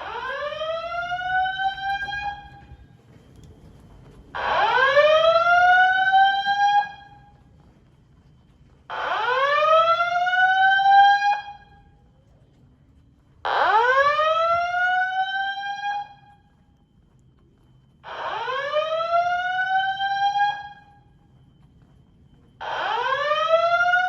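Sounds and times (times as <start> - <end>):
fire alarm whoop tone: 0.0 - 2.8, 4.4 - 7.4, 8.9 - 11.9, 13.5 - 24.0.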